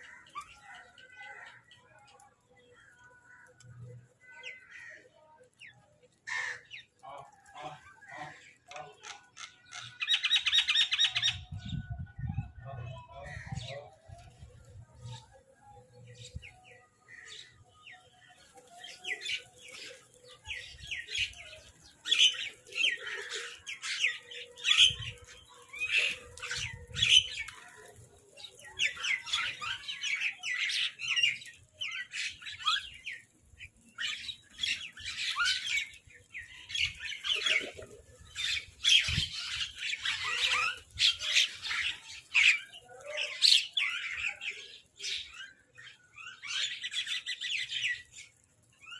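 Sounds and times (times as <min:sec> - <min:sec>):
crows cawing and squawking: 0:00.0 - 0:01.7, 0:03.3 - 0:05.2, 0:06.2 - 0:10.0, 0:22.2 - 0:28.0.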